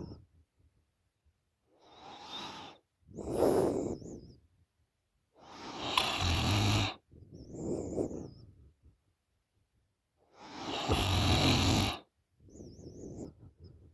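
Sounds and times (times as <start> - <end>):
woman snoring: 5.6 - 7.0, 10.5 - 12.0.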